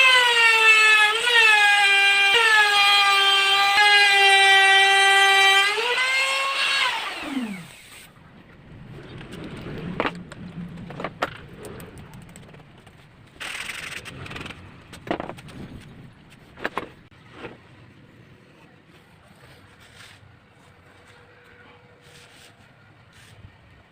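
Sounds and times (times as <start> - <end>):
power tool motor whine: 0.0 - 8.0
knocks and clicks of handling: 14.3 - 17.6.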